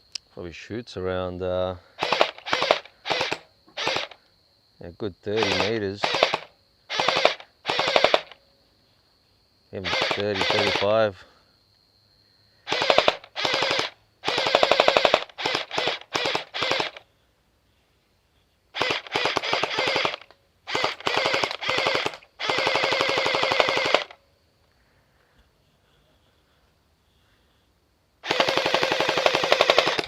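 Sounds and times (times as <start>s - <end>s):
gel blaster firing bursts: 2.0s - 4.2s, 5.4s - 8.4s, 9.8s - 11.0s, 12.7s - 17.0s, 18.8s - 24.2s, 28.2s - 30.0s.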